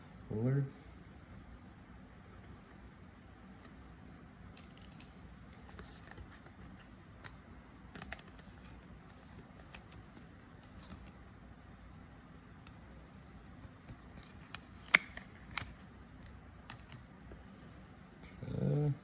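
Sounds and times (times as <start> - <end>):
low room hum: 0.0 - 19.0
trading cards being handled: 4.5 - 11.2, 13.0 - 17.0.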